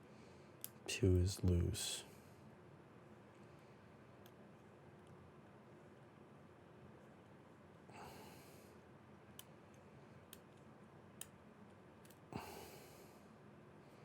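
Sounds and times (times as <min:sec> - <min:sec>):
soft breath out: 0:12.4 - 0:13.3.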